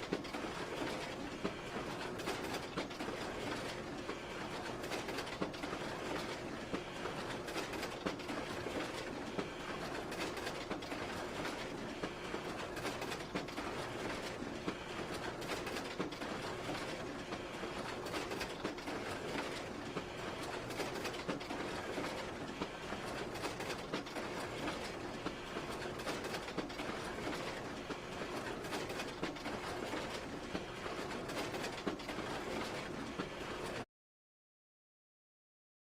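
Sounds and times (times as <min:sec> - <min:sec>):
photocopier whirring: 0:00.0 - 0:33.8.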